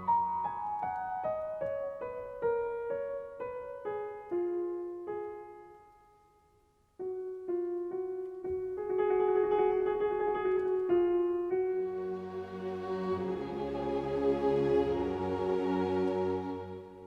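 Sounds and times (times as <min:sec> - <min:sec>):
slow solo piano melody: 0:00.0 - 0:12.5.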